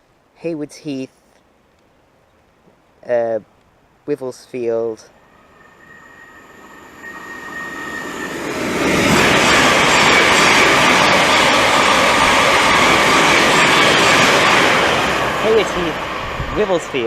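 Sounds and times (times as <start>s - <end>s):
train passing at speed: 5.1s - 17.0s.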